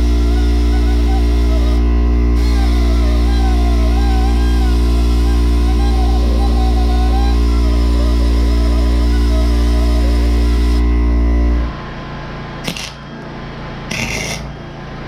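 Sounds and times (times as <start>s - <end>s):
wavering melody: 0.0s - 11.8s
steady low drone: 0.0s - 15.0s.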